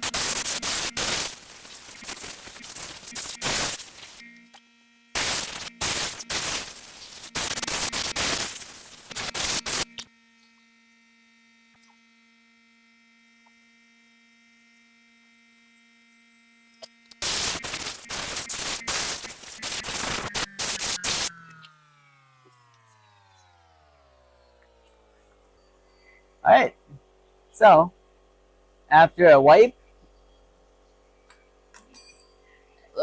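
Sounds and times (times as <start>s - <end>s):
air blasts blowing out chainsaw: 0.0s - 4.3s, 5.2s - 10.0s, 17.1s - 21.8s.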